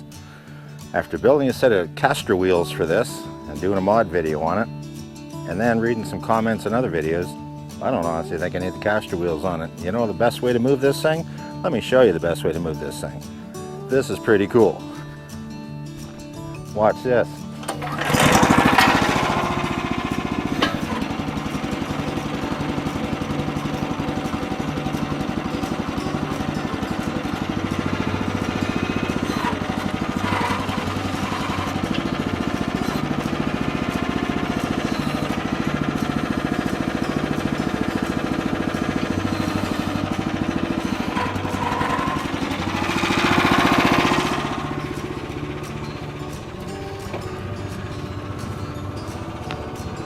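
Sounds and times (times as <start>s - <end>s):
small gasoline engine chugging: 17.6s - 50.0s.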